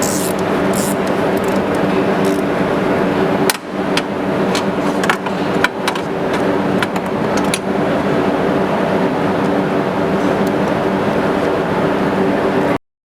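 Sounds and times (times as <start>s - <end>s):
car engine and road drone: 0.0s - 12.8s
sharp clicks and knocks: 3.5s - 7.7s.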